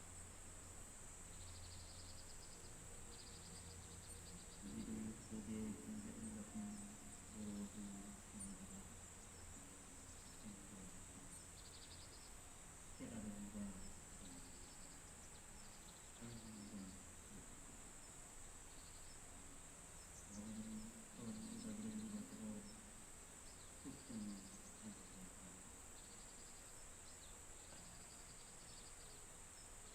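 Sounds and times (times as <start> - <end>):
crickets droning: 0.0 - 29.9
bird chirps: 1.2 - 29.9
faint prayer chanting: 2.6 - 11.8, 12.9 - 18.0, 20.2 - 23.0, 23.8 - 25.8, 27.6 - 28.4.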